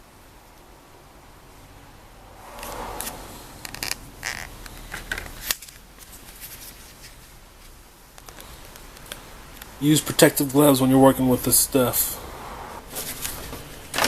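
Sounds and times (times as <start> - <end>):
soft rustle: 2.3 - 9.7.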